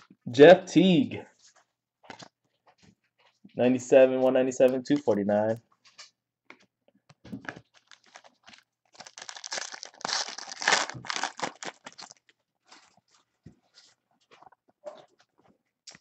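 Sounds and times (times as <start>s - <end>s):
wrapper crinkling and tearing: 7.6s - 13.0s.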